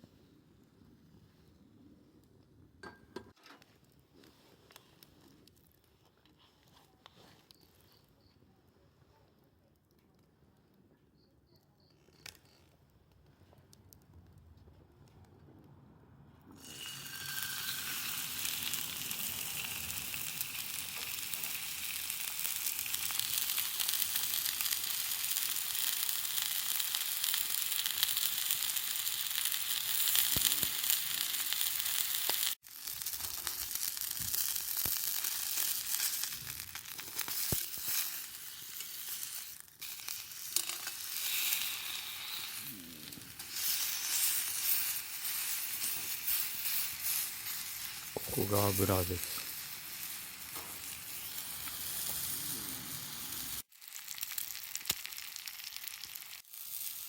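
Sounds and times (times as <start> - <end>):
pork sizzling in fat: 16.5 - 57.0.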